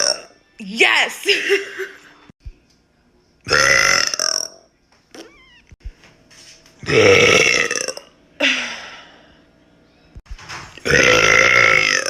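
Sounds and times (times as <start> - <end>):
woman burping: 0.0 - 0.4, 6.9 - 8.9, 10.9 - 12.0.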